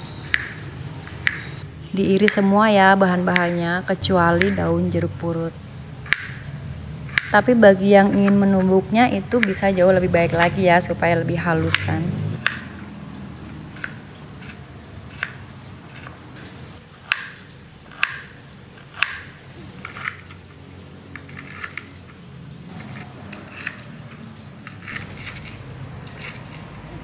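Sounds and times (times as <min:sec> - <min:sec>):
low steady hum: 0:00.0 - 0:15.9
knife chopping on cutting board: 0:17.1 - 0:18.3.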